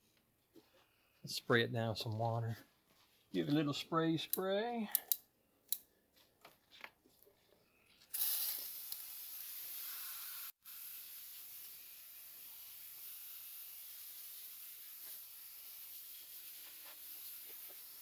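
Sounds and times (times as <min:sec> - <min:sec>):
small clicks: 0:04.3 - 0:05.8
water spraying from nozzle: 0:08.1 - 0:18.0.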